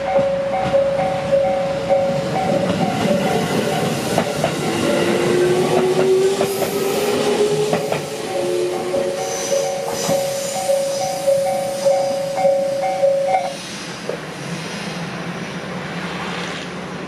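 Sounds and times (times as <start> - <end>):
level crossing warning bell: 0.0 - 4.4, 8.2 - 13.6
train whine rising in pitch: 0.0 - 15.0
electric train passing: 0.0 - 17.0.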